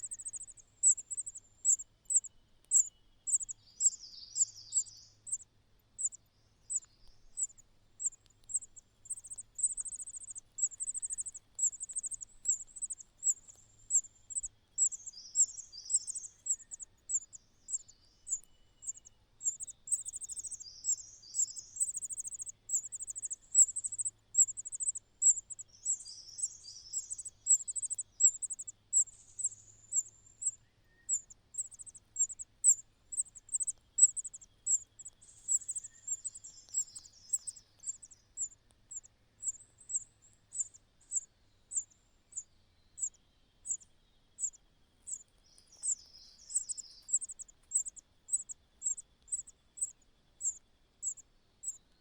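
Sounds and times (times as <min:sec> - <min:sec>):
wavering bird calls: 0:00.0 - 0:05.4, 0:06.0 - 0:41.8
cricket chirping: 0:00.0 - 0:51.9.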